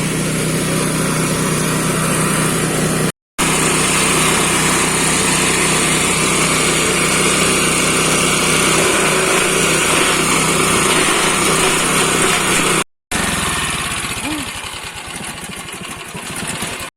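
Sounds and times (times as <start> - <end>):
chopping machine engine running: 0.0 - 16.9
low pulsing engine: 13.2 - 16.0.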